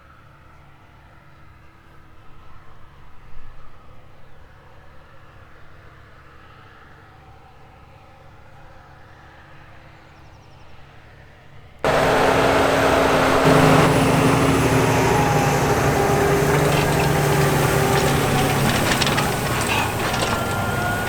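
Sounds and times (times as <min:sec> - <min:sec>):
tractor engine: 0:11.8 - 0:21.0
plough working soil: 0:11.9 - 0:21.0.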